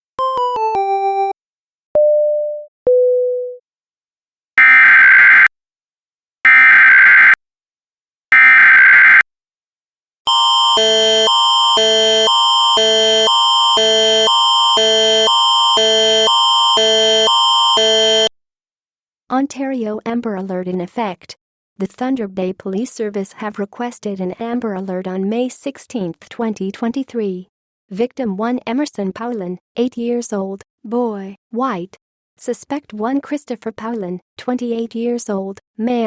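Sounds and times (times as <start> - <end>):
alert attention signal tones: 10.3 - 18.3
electronic beeps: 10.3 - 18.3.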